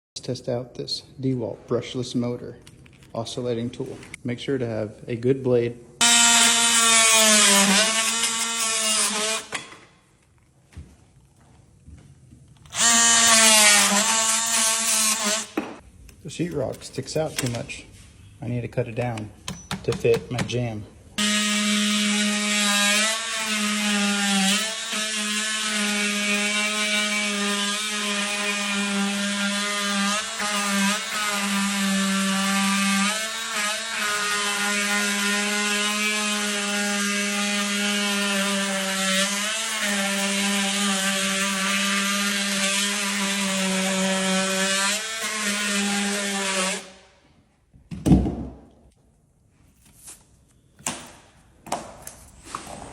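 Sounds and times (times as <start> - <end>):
multi-tool cutting drywall: 6.0 - 9.9, 12.6 - 15.8, 19.0 - 47.1.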